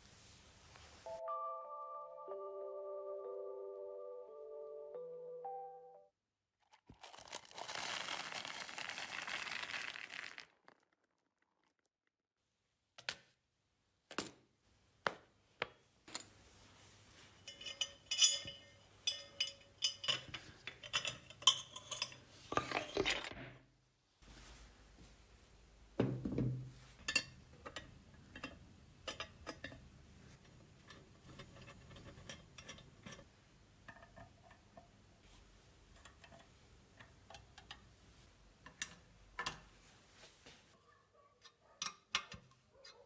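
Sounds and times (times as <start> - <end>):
metal parts and tools clinking: 17.4 - 23.3.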